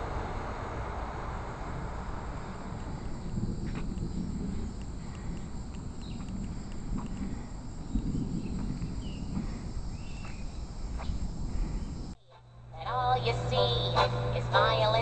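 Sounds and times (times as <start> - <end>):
faint high hum: 0.0 - 15.0
steady low rumble: 0.0 - 15.0
faint clicks: 3.6 - 9.4.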